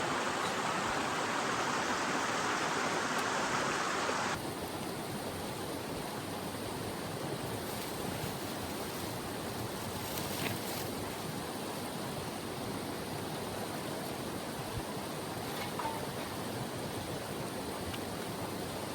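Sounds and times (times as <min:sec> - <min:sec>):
river rushing: 0:00.0 - 0:10.0.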